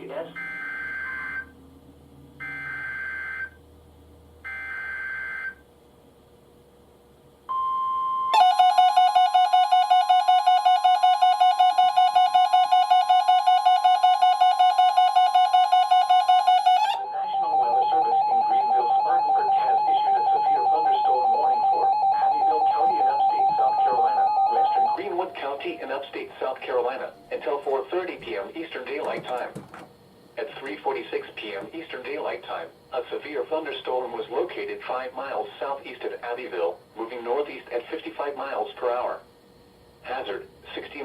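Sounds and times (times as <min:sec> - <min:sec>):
steady warning alarm tone: 0:00.0 - 0:01.6, 0:02.4 - 0:03.6, 0:04.4 - 0:05.6, 0:07.5 - 0:32.4
fast pulsing electronic alarm: 0:00.2 - 0:01.6, 0:02.4 - 0:03.6, 0:04.4 - 0:05.6, 0:08.3 - 0:29.6.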